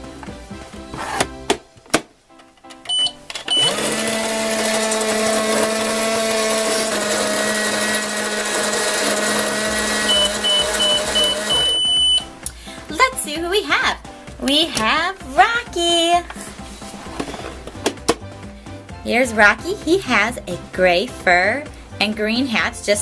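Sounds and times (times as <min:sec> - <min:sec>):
microwave button beeps: 0:02.9 - 0:03.7, 0:10.1 - 0:12.3
microwave humming: 0:02.9 - 0:12.3
short evenly spaced beeps: 0:10.1 - 0:12.3.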